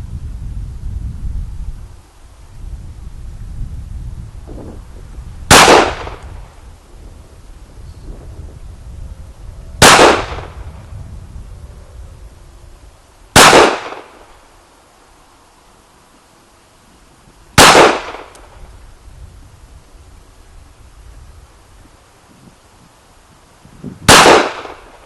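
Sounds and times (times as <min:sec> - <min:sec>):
pistol shots: 0:05.5 - 0:06.2, 0:09.8 - 0:10.5, 0:13.4 - 0:14.2, 0:17.6 - 0:18.4, 0:24.1 - 0:25.0.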